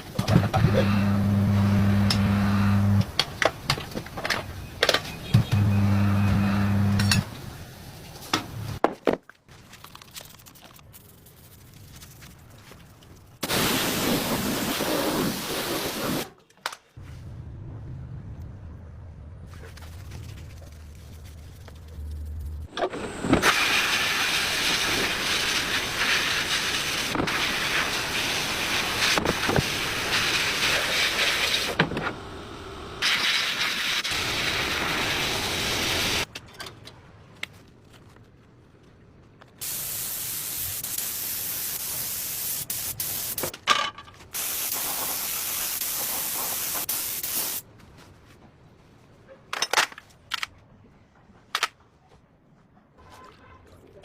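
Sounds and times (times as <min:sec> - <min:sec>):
hissing spray bursts: 0:13.4 - 0:16.3, 0:23.0 - 0:36.3, 0:39.6 - 0:43.5, 0:44.4 - 0:47.6.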